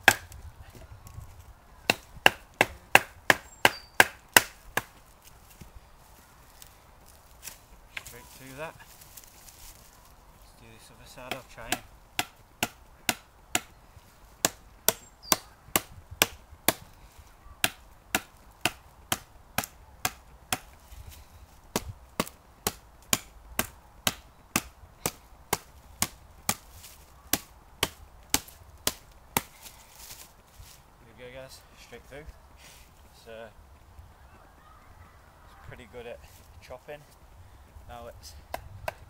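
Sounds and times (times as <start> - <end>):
knife chopping wood: 0.0 - 0.4, 1.9 - 5.0, 11.2 - 13.7, 14.4 - 16.9, 17.6 - 20.8, 21.7 - 26.7, 27.3 - 29.6, 38.5 - 39.0.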